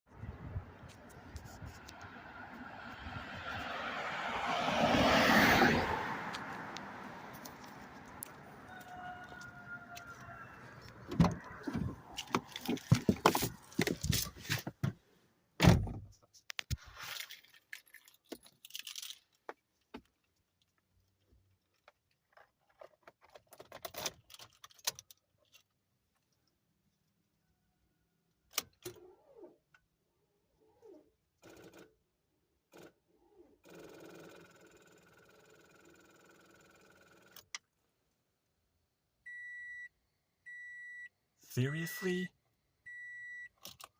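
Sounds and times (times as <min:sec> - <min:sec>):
car passing by: 0:01.6 - 0:08.5
light clicks and rattles: 0:21.5 - 0:26.6.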